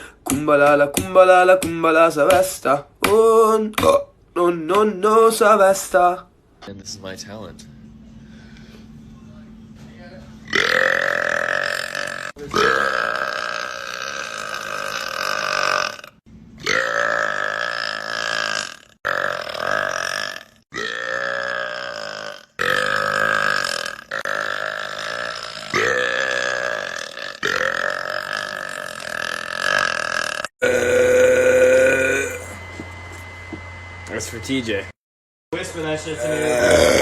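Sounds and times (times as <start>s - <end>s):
man belching long burps: 10.5s - 32.6s, 36.2s - 37.0s.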